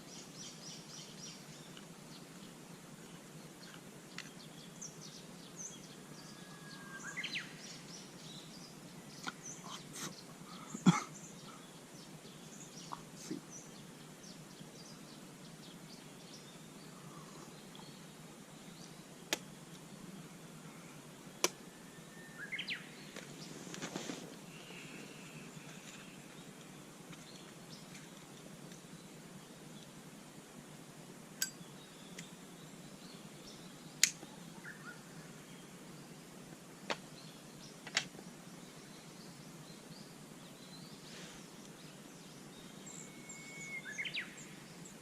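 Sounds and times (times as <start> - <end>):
birds chirping: 0.0 - 30.8, 31.4 - 36.4, 37.1 - 45.0.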